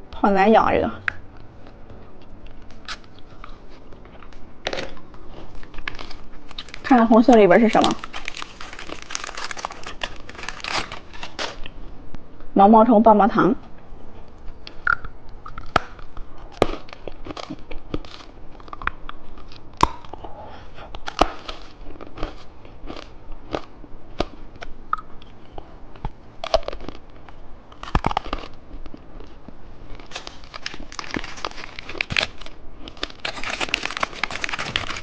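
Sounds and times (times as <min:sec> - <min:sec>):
plastic wrapper crinkling: 0:02.6 - 0:11.7, 0:27.8 - 0:35.0
crunching hard candy: 0:02.8 - 0:11.7, 0:14.9 - 0:35.0.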